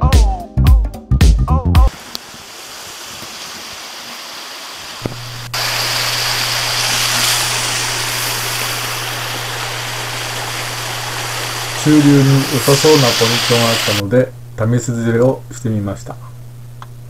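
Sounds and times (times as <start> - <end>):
background music: 0.0 - 1.9
mountain stream rushing: 1.9 - 14.0
low steady hum: 5.0 - 17.0.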